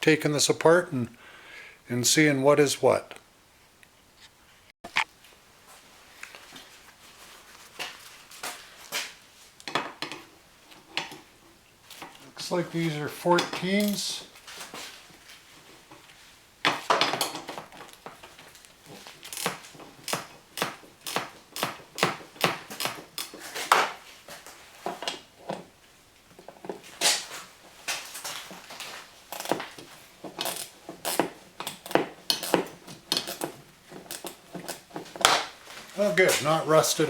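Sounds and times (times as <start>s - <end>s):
wrench clicking on nuts: 19.3s - 23.4s, 29.3s - 29.6s, 30.4s - 34.8s.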